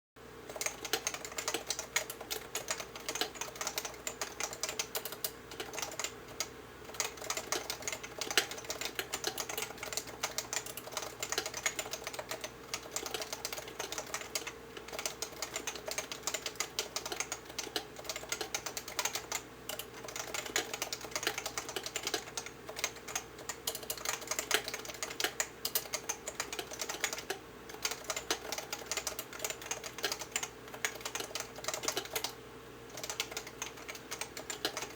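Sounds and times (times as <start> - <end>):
fast typing on keyboard: 0.5 - 34.9.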